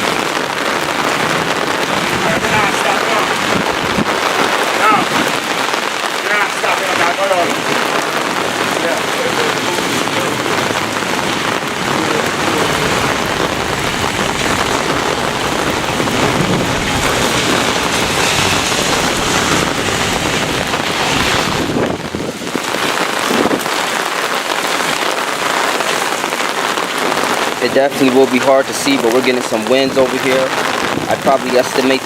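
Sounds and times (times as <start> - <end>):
heavy rain pouring: 0.0 - 32.0.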